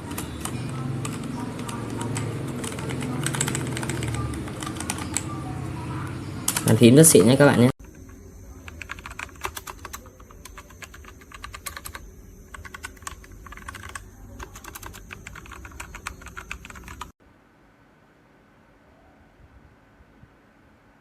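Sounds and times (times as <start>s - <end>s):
rapid mechanical keyboard typing: 0.0s - 5.4s, 6.5s - 17.2s.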